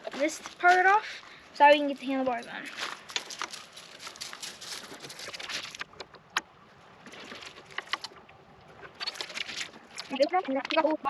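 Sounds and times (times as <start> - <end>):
sharp clicks and knocks: 7.1 - 11.0.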